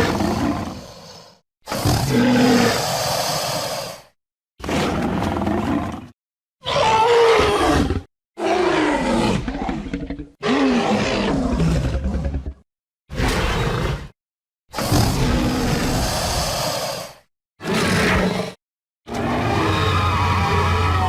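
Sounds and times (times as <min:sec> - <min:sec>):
cartoon dinosaur roars: 0:00.0 - 0:21.0.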